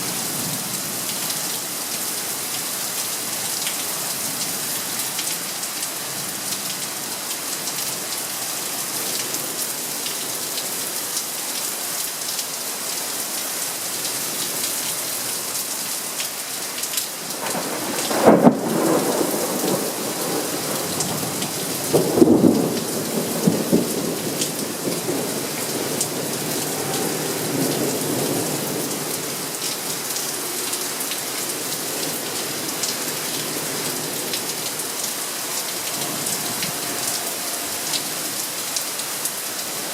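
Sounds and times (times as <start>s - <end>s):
steady rain falling: 0.0s - 39.9s
thunderclap: 17.4s - 24.2s
rolling thunder rumble: 17.4s - 29.5s.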